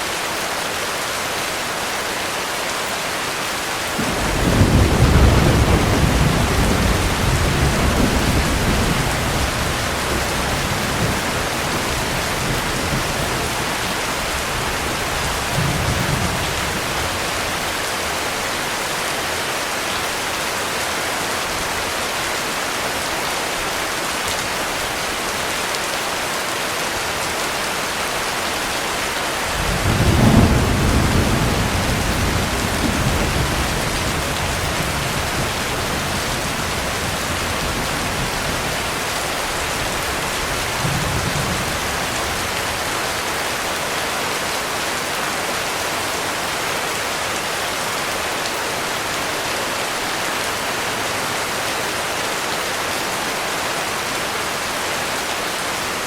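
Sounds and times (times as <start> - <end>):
heavy rain falling: 0.0 - 56.0
thunder rumbling: 4.0 - 18.2, 29.5 - 43.4.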